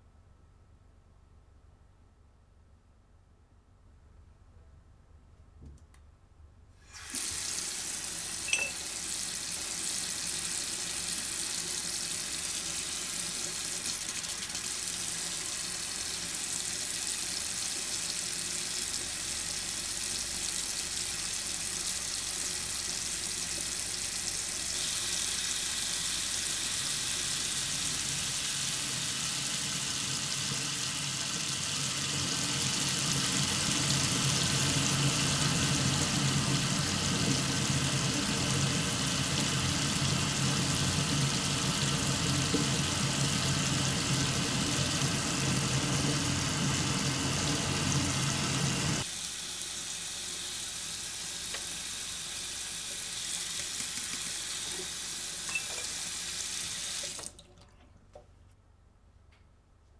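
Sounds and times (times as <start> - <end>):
running water rushing: 32.8 - 55.9.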